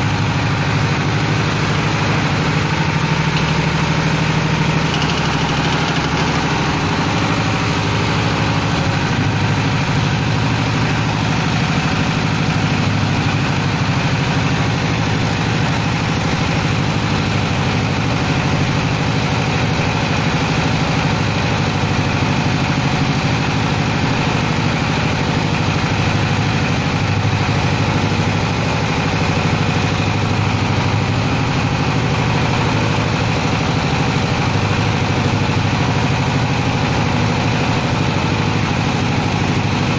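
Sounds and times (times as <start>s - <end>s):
machine motor drone: 0.0s - 18.9s.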